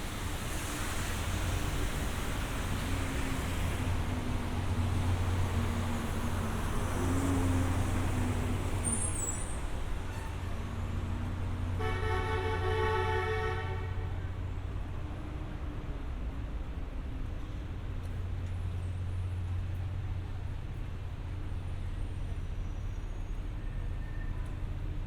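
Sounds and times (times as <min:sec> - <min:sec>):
passing vehicles: 0:00.0 - 0:25.0
vehicle horn honking: 0:11.8 - 0:14.2.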